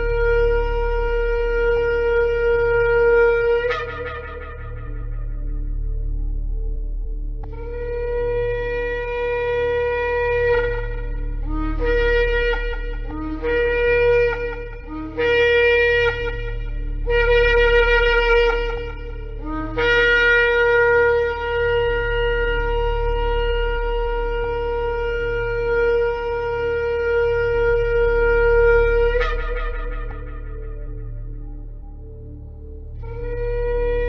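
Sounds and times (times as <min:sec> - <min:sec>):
ram's horn blasts: 0:00.0 - 0:32.4
low steady hum: 0:00.0 - 0:34.0.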